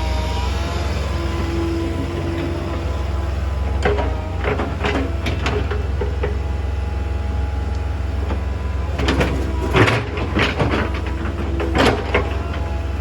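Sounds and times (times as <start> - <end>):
excavator diesel engine running: 0.0 - 13.0
clattering and scraping in stony soil: 2.0 - 6.5, 8.2 - 13.0.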